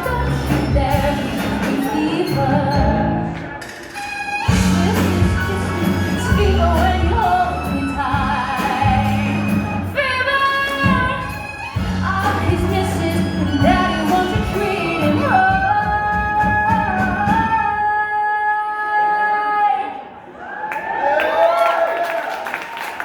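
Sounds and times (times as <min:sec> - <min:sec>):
woman singing: 0:00.0 - 0:03.4, 0:04.5 - 0:20.0
live band playing: 0:00.0 - 0:18.0.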